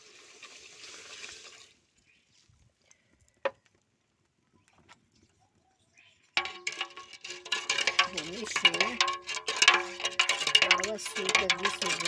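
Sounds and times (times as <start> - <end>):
sugar pouring into pot: 6.4 - 12.0.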